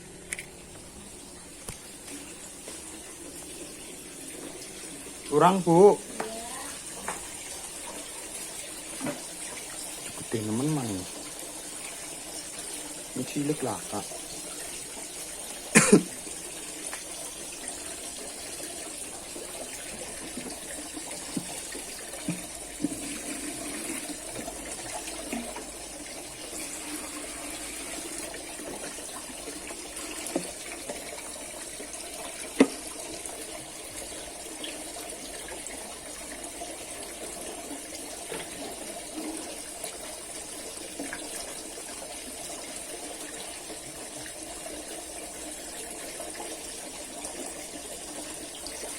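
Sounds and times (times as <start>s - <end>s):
water rushing: 0.8s - 45.1s.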